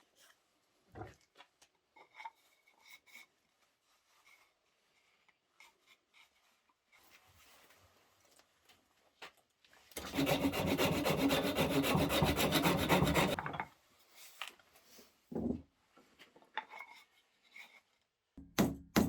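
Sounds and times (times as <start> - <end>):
soft rubbing of wood: 10.2 - 13.4.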